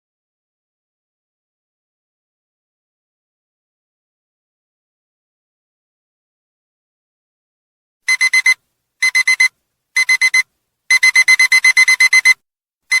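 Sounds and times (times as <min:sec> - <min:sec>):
alarm clock beeping: 0:08.1 - 0:13.0.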